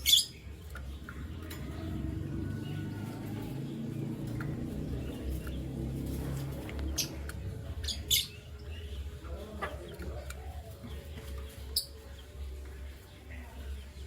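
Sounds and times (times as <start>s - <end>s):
canaries chirping: 0.0s - 14.0s.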